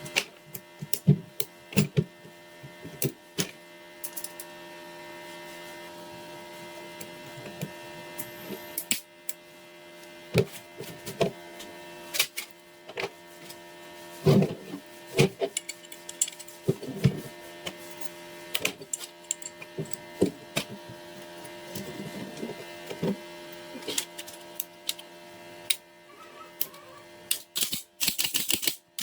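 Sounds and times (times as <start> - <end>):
clicks and knocks of small parts: 15.4 - 16.6, 18.5 - 20.7, 26.6 - 29.0.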